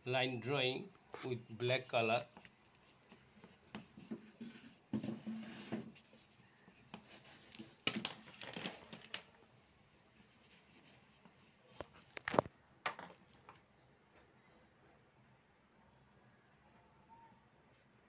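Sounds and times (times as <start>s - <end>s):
drawing strokes on paper: 2.2s - 7.6s, 10.1s - 11.8s.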